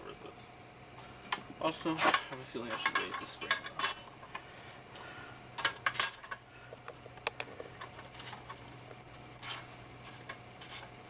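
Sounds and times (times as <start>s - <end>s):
metal parts clinking: 2.0s - 4.2s, 5.6s - 6.4s.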